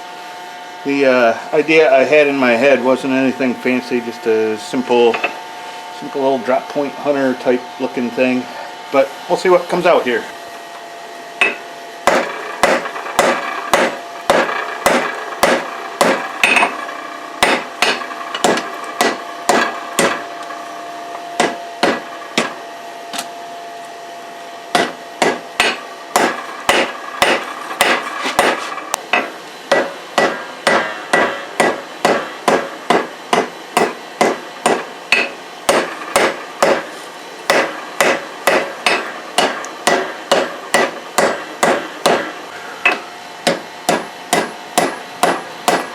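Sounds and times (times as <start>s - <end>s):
hammer striking steel on anvil: 11.4s - 20.6s, 21.4s - 22.6s, 24.7s - 36.9s, 37.5s - 45.9s.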